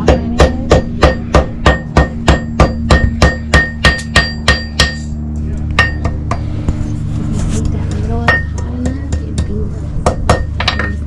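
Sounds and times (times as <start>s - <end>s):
hammer striking iron on anvil: 0.0s - 5.1s, 5.8s - 6.4s, 8.2s - 11.0s.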